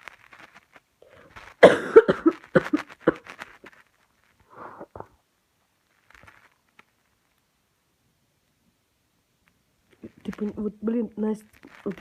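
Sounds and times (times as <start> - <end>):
woman coughing: 1.6 - 3.2.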